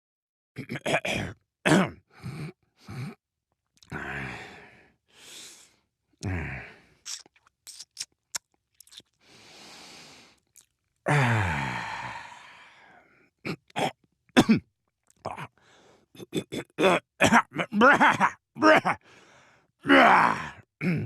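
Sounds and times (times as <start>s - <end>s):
mouth clicks and smacks: 3.8s - 4.0s, 7.0s - 9.3s, 10.4s - 10.9s
man groaning: 3.9s - 4.5s, 6.2s - 6.8s, 11.1s - 12.6s, 17.6s - 19.0s, 19.8s - 21.0s
breathy exhale: 9.2s - 10.4s, 11.3s - 13.1s.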